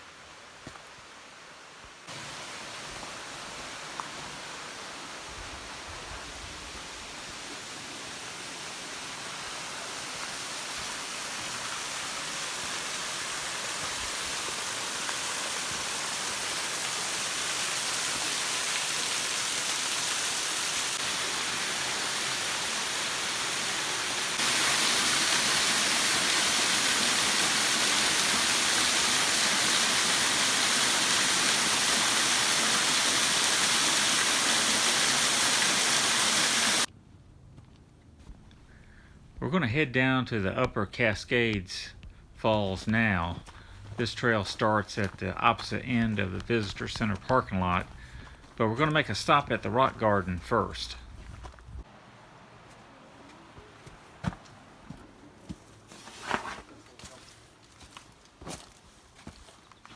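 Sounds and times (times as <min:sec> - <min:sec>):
waterfall rushing: 0:06.7 - 0:36.9.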